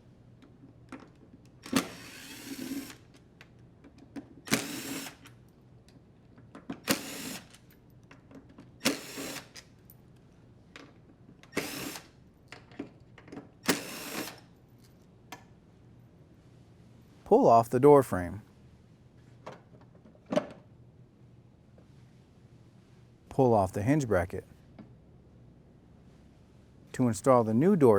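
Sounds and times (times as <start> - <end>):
drill driver whirring: 1.6 - 3.1, 4.5 - 5.3, 6.8 - 7.6, 8.8 - 9.6, 11.5 - 12.1, 13.6 - 14.4
drill trigger click: 4.5 - 5.2, 6.9 - 7.5, 8.8 - 9.6, 13.7 - 14.4.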